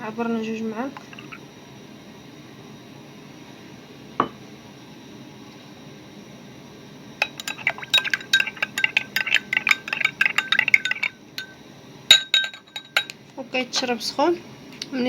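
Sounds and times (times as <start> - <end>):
spoon clinking in glass: 7.2 - 13.2.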